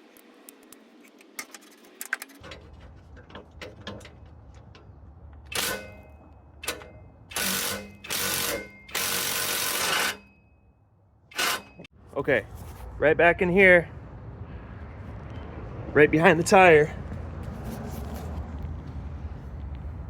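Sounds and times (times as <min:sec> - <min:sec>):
impact wrench hammering: 0:05.5 - 0:10.3.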